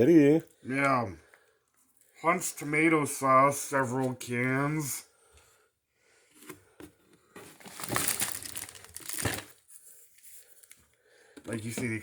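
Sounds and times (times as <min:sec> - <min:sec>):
packaging crinkling: 0:07.4 - 0:09.7.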